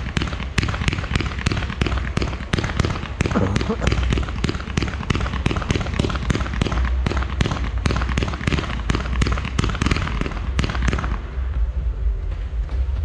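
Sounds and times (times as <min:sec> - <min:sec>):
fireworks bangs and cracks: 0:00.0 - 0:11.4
low rumble: 0:10.2 - 0:13.0.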